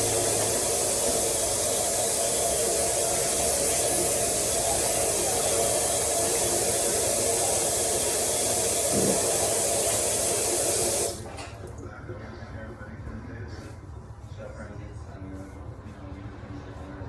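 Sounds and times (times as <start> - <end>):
tap water running into sink: 0.0 - 11.9.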